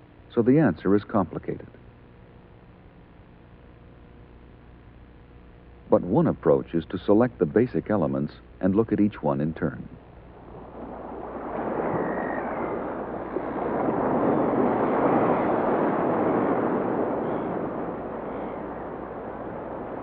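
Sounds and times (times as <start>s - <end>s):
sea waves washing: 10.2s - 20.0s.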